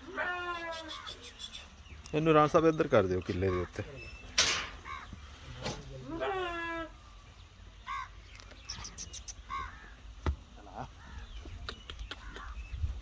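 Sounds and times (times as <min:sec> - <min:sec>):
crows cawing: 0:03.4 - 0:03.9, 0:04.8 - 0:05.3, 0:07.8 - 0:08.2, 0:09.5 - 0:10.1, 0:10.9 - 0:11.4.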